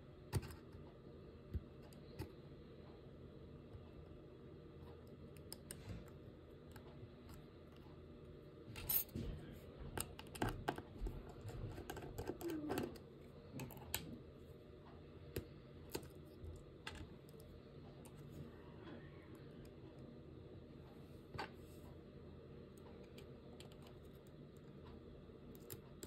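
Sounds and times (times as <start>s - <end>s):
faint low hum: 0.0s - 26.0s.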